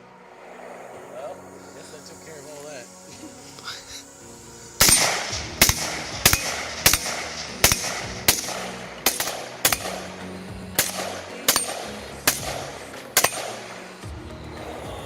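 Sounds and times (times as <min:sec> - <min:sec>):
background music: 0:00.0 - 0:15.0
pistol shots: 0:04.8 - 0:14.0.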